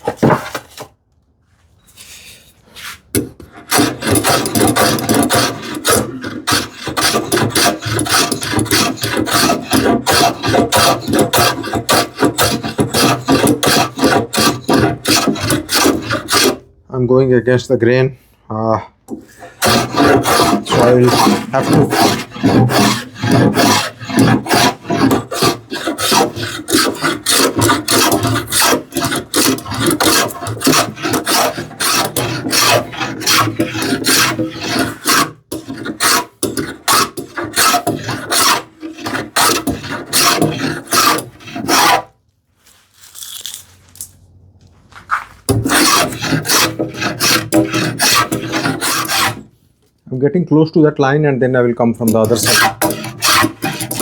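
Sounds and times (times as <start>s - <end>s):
plane rasping across wood: 2.8s - 16.6s, 19.3s - 42.1s, 45.5s - 49.5s, 52.1s - 54.0s.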